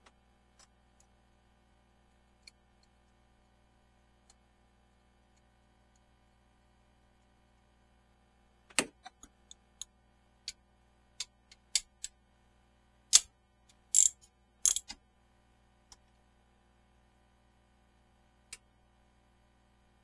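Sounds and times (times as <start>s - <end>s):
hard objects clicking and knocking: 14.0s - 14.9s.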